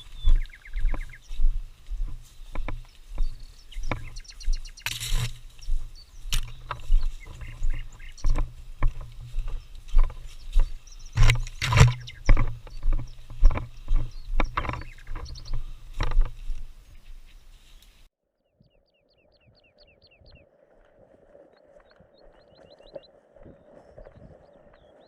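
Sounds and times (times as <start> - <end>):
footsteps in undergrowth: 0.0 - 18.1
gear rustling and knocking: 0.8 - 4.2, 4.8 - 17.3.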